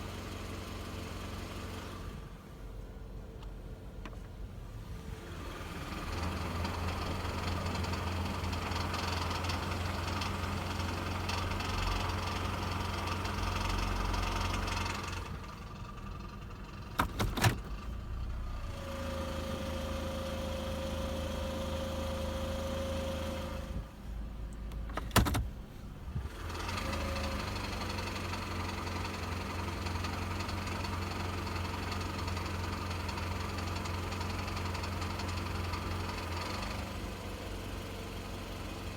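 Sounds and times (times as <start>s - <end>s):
engine idling low hum: 0.0s - 38.9s.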